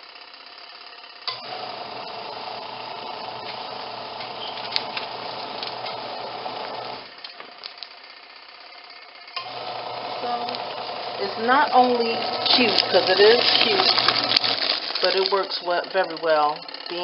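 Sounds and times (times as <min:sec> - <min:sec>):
washing machine motor humming: 0:01.2 - 0:07.2, 0:09.3 - 0:17.0
water and clothes churning: 0:12.3 - 0:15.7.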